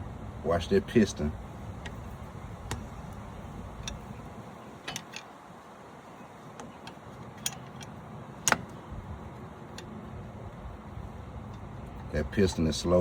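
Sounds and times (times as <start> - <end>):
metallic clicks and clanks: 1.8 - 5.4, 6.5 - 8.9
sharp metallic clack: 6.8 - 8.8.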